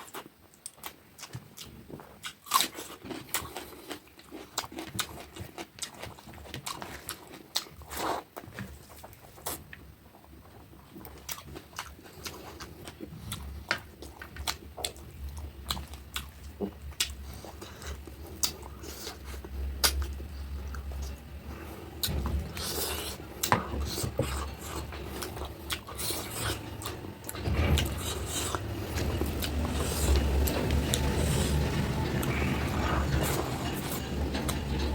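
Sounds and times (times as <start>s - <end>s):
chewing with wet mouth smacks: 0.0s - 9.8s, 10.5s - 27.0s
low steady hum: 6.2s - 34.9s.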